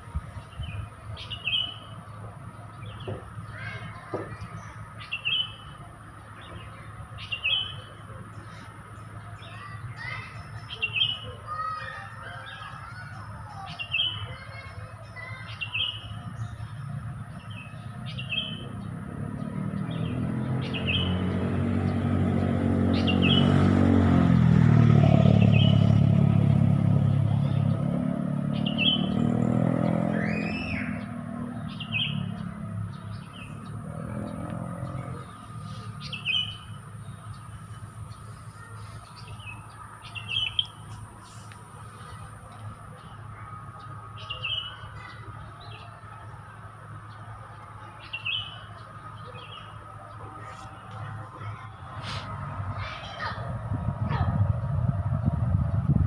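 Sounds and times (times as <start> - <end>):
songbirds chirping: 0.0 - 56.0
vehicle passing: 7.2 - 56.0.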